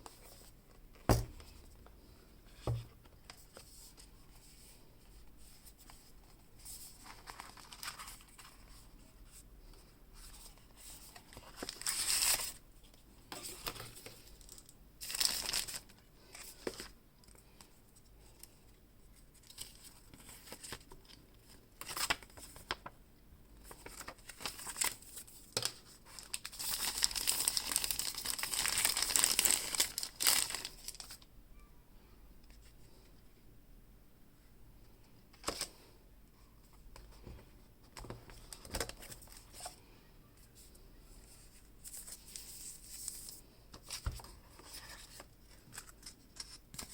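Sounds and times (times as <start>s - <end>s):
plastic packaging crinkling and tearing: 7.0s - 8.7s, 11.2s - 12.6s, 13.6s - 16.9s, 23.7s - 31.2s.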